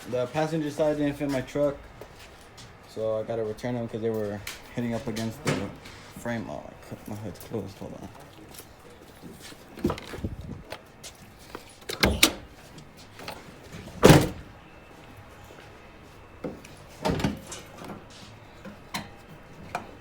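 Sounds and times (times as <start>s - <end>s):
truck door and hood latch clunks: 11.8s - 13.4s, 14.0s - 14.5s.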